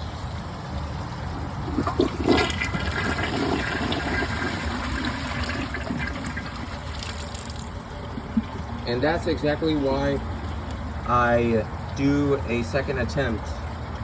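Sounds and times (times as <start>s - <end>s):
toilet flushing: 1.2s - 9.4s.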